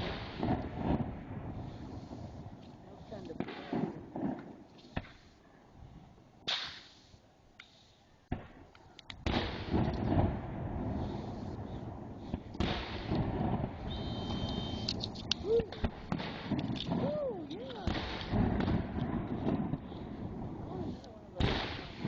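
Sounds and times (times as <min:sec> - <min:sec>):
fireworks bangs and crackle: 0:00.0 - 0:05.4, 0:06.4 - 0:22.0.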